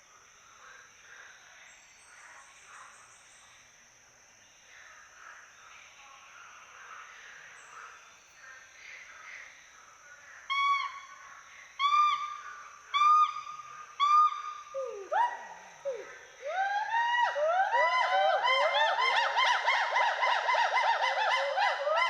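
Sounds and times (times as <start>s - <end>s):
high insect hum: 0.0s - 22.0s
gibbons hooting and whooping: 14.0s - 22.0s.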